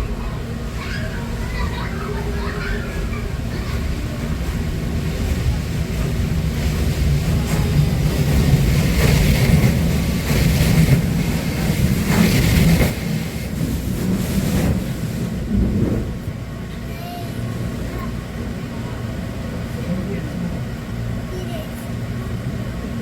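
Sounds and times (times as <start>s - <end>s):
train car rumble: 0.0s - 23.0s.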